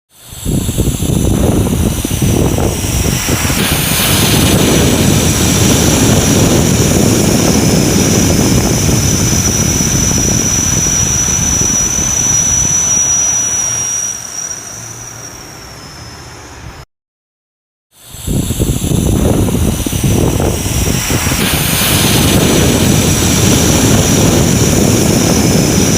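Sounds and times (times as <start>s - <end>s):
jet engines roaring: 0.2s - 16.8s, 18.2s - 25.9s.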